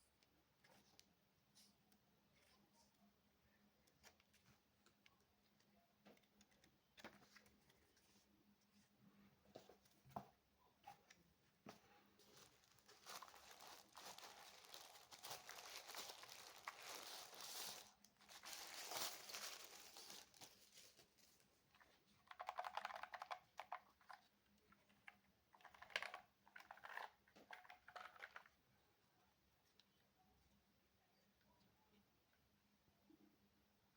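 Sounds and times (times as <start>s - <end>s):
packaging rustling and crinkling: 12.2s - 21.4s.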